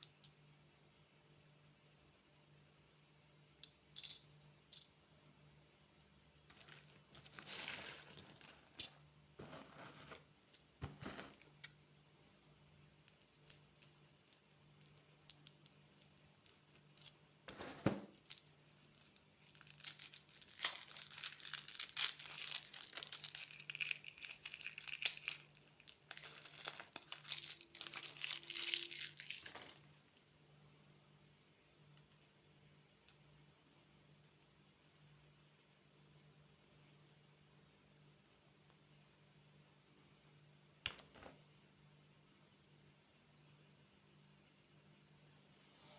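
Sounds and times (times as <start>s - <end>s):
plastic wrapper crinkling: 6.5s - 9.6s, 18.1s - 30.0s.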